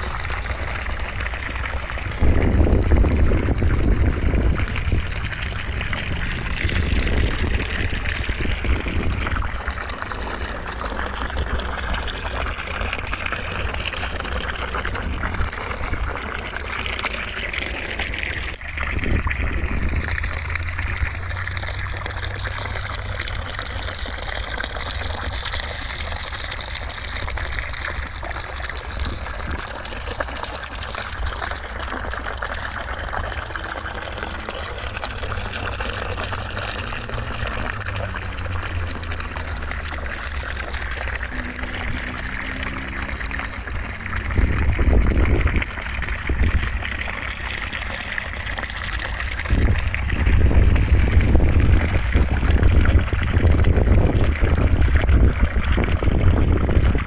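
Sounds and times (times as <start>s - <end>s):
low rumble: 2.1s - 10.0s.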